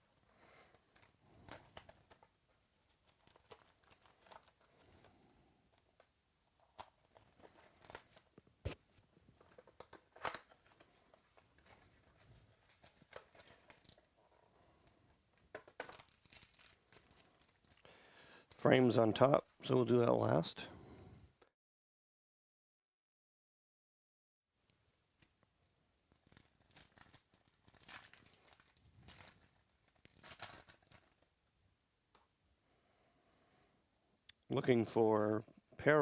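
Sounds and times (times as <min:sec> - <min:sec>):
packaging tearing and crinkling: 0:00.7 - 0:04.7, 0:06.7 - 0:08.3, 0:09.5 - 0:14.1, 0:15.5 - 0:17.8, 0:26.1 - 0:31.3.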